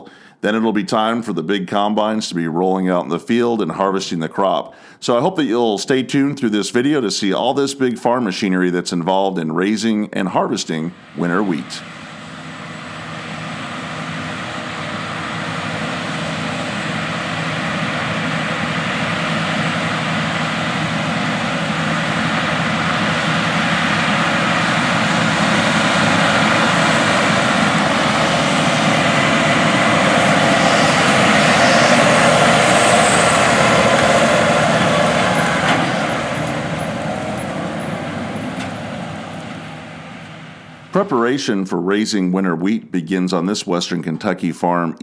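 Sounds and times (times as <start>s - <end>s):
diesel farm machine running: 10.9s - 41.4s.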